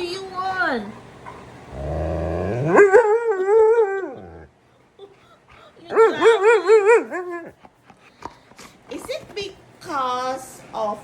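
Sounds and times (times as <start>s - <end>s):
dog grumbling and howling: 1.7s - 4.6s.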